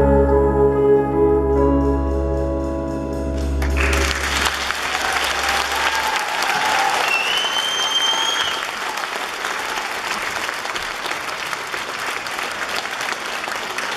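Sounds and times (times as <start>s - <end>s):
audience applauding: 3.6s - 13.9s.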